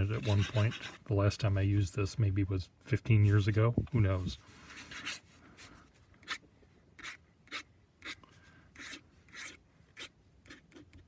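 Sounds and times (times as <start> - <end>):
pen nib scratching paper: 0.0 - 1.0, 4.8 - 5.2, 7.0 - 8.2, 8.8 - 10.9.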